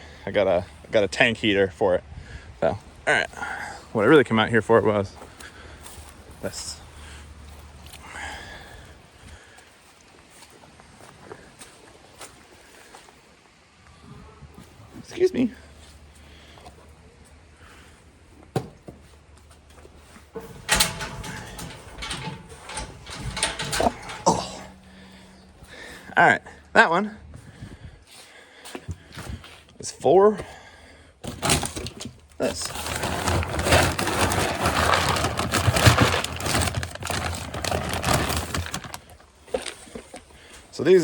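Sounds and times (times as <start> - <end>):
clattering and scraping: 19.7 - 26.7, 31.3 - 39.1
dry pellets rattling and crunching: 32.4 - 39.8.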